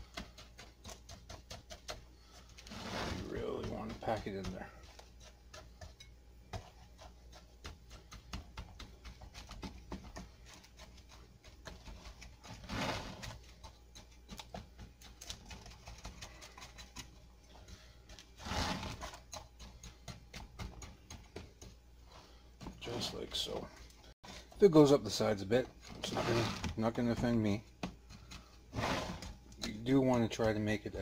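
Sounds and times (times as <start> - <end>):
scraping crunching pushes: 2.6 - 4.8, 11.9 - 13.4, 18.2 - 19.2, 25.8 - 27.6, 28.7 - 29.4.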